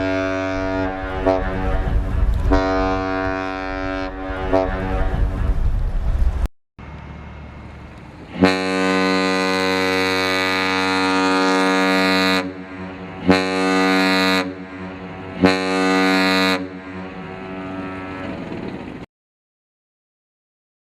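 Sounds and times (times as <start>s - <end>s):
ship steam whistle blasts: 0.0s - 5.3s, 8.3s - 18.4s
low rumble of wind: 0.0s - 19.1s.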